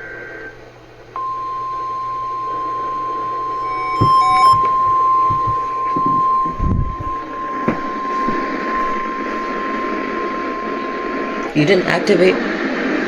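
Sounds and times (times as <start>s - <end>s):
short beeps: 1.2s - 11.6s
steady alarm tone over radio: 1.2s - 12.2s
low thumps: 3.5s - 11.6s
radio static hiss: 7.2s - 13.0s.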